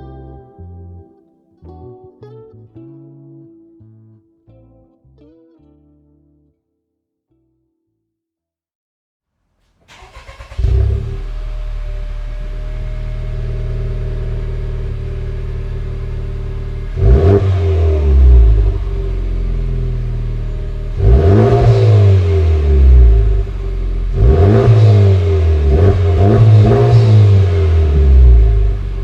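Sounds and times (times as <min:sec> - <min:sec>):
car engine idling and revving: 0:09.8 - 0:29.0.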